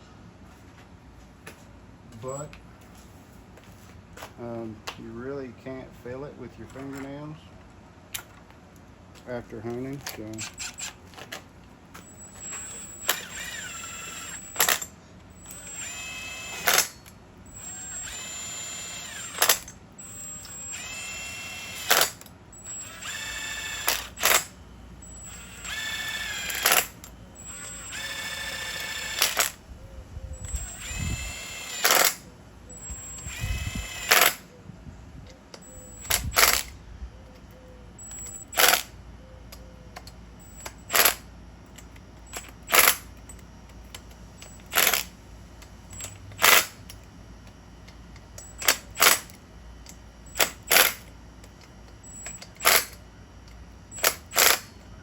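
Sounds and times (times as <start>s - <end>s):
torque wrench clicking: 30.4s - 32.2s, 32.8s - 34.4s, 38.0s - 38.9s, 40.0s - 45.1s, 45.9s - 47.0s, 48.2s - 53.0s, 54.0s - 54.7s.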